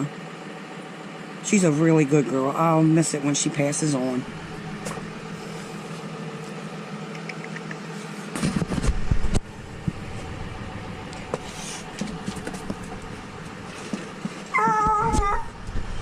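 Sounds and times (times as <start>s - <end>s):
steady mechanical hum: 0.0s - 16.0s
low rumbling and knocks: 8.4s - 16.0s.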